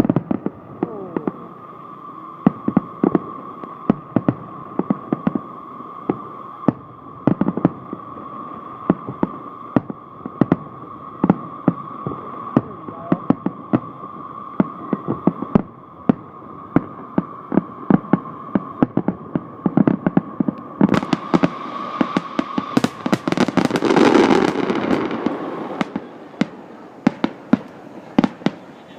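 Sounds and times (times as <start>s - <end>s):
fireworks bangs and pops: 0.0s - 1.5s, 2.4s - 5.4s, 6.1s - 8.1s, 8.8s - 28.9s
fireworks crackling: 0.0s - 28.9s
steady high tone: 20.6s - 28.1s.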